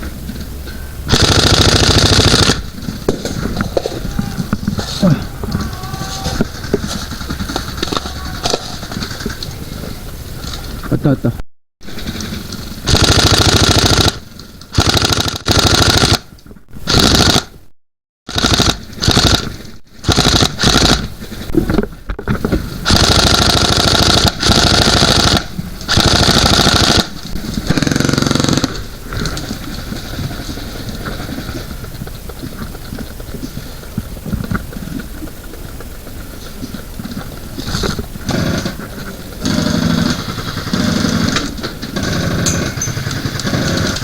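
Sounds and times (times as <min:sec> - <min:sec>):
quiet steady noise: 0:00.0 - 0:17.7, 0:18.6 - 0:44.0
airsoft guns firing automatic bursts: 0:01.1 - 0:10.0, 0:11.9 - 0:17.6, 0:18.3 - 0:21.4, 0:22.8 - 0:31.9, 0:37.6 - 0:44.0.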